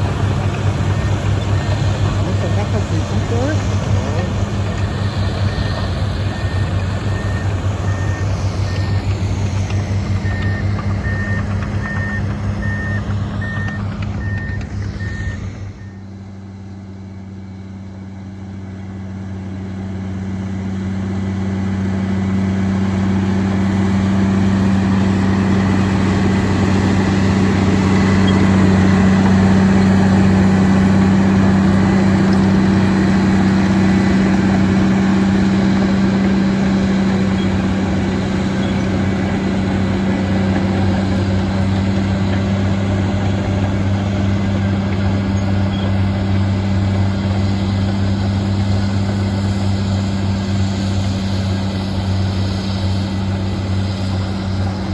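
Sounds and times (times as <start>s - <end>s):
heavy diesel engines running: 0.0s - 54.9s
steady engine drone: 0.0s - 54.9s
backup alarm beeping: 4.1s - 9.0s.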